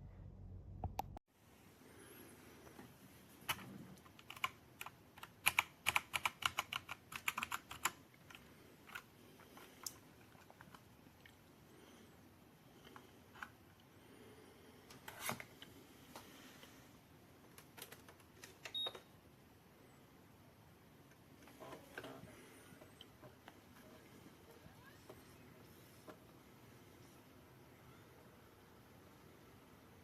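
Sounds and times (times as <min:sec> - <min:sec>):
mechanical keyboard typing: 0:03.5 - 0:09.1.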